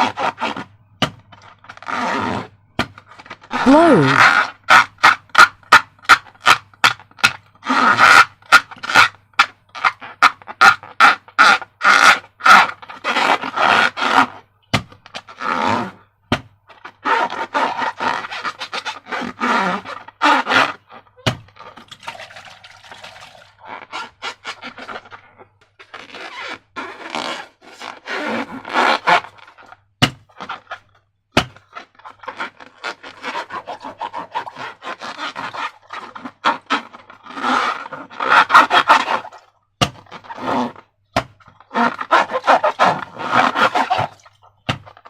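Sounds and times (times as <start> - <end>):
squeaky rubbing of balloons: 0.0 - 0.7, 1.3 - 16.1, 16.7 - 45.0.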